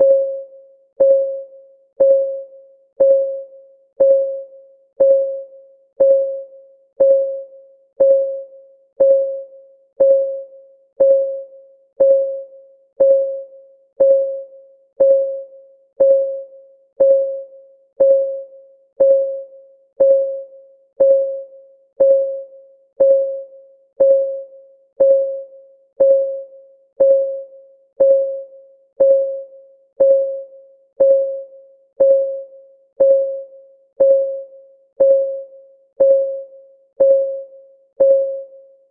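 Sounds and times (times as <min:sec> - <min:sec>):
timer ticking: 0:03.0 - 0:03.4, 0:04.0 - 0:04.4, 0:05.0 - 0:05.4, 0:06.0 - 0:06.4, 0:07.0 - 0:07.4, 0:08.0 - 0:08.4, 0:09.0 - 0:09.4, 0:10.0 - 0:10.4, 0:11.0 - 0:11.4, 0:12.0 - 0:12.4, 0:13.0 - 0:13.4, 0:14.0 - 0:14.4, 0:15.0 - 0:15.4, 0:16.0 - 0:16.4, 0:17.0 - 0:17.4, 0:18.0 - 0:18.4, 0:19.0 - 0:19.4, 0:20.0 - 0:20.4, 0:21.0 - 0:21.4, 0:22.0 - 0:22.4, 0:23.0 - 0:23.4, 0:24.0 - 0:24.4, 0:25.0 - 0:25.4, 0:26.0 - 0:26.4, 0:27.0 - 0:27.4, 0:28.0 - 0:28.4, 0:29.0 - 0:29.4, 0:30.0 - 0:30.4, 0:31.0 - 0:31.4, 0:32.0 - 0:32.4, 0:33.0 - 0:33.4, 0:34.0 - 0:34.4, 0:35.0 - 0:35.4, 0:36.0 - 0:36.4, 0:37.0 - 0:37.4, 0:38.0 - 0:38.4.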